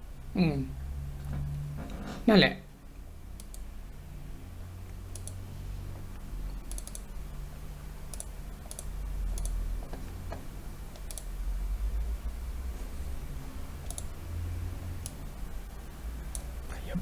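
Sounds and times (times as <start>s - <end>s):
low steady hum: 0.0s - 17.0s
computer mouse clicks: 3.4s - 3.7s, 4.9s - 5.4s, 6.5s - 7.1s, 8.0s - 10.1s, 10.9s - 11.3s, 13.8s - 14.1s, 15.0s - 15.2s, 16.3s - 16.5s.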